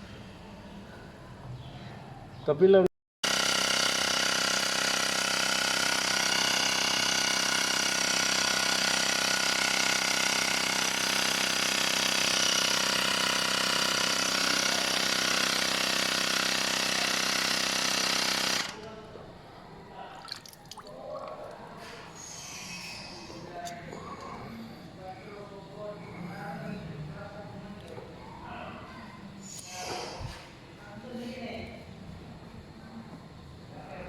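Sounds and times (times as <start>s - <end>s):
air compressor pulsing drone: 3.2s - 18.8s.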